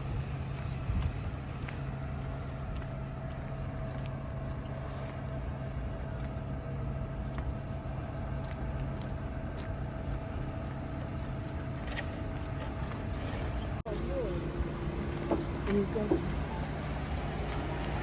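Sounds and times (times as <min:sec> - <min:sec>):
vehicle engine hum: 0:00.0 - 0:18.0.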